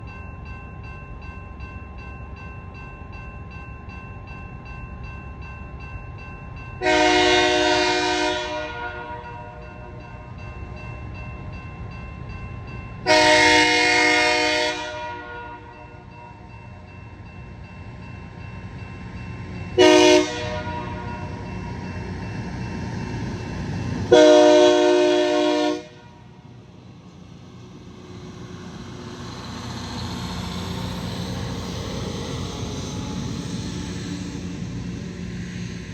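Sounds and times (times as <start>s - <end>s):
multi-chime air horn blasts: 6.8s - 9.6s, 19.8s - 21.2s.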